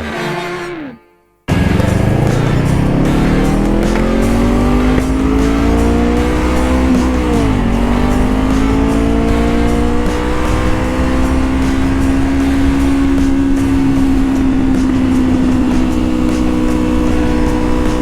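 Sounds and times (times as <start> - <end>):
motorcycle engine revving: 0.0 - 18.0.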